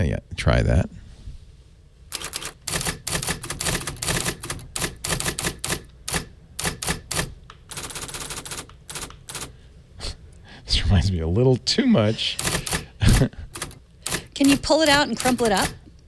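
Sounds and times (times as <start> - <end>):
typewriter key strikes: 2.1 - 9.5, 12.4 - 15.8.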